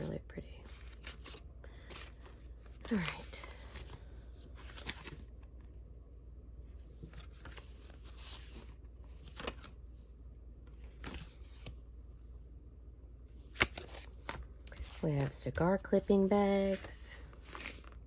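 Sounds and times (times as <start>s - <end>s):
paper rustling and sliding: 6.9s - 9.7s, 16.7s - 18.0s.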